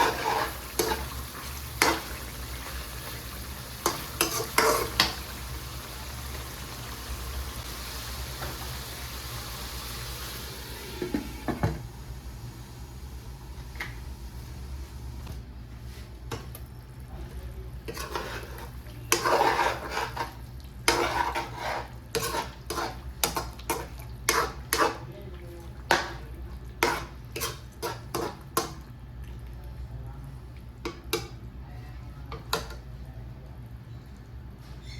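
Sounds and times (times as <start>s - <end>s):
spoon scraping metal pan: 0.0s - 1.1s, 3.8s - 5.2s, 17.9s - 25.1s, 26.8s - 28.4s
steady low hum: 10.3s - 19.2s.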